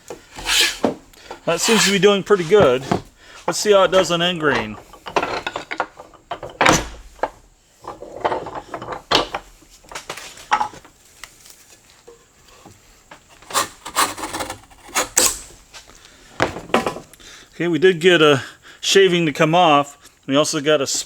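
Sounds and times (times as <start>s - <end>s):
hand plane rasping on wood: 0.2s - 2.2s, 13.4s - 15.5s.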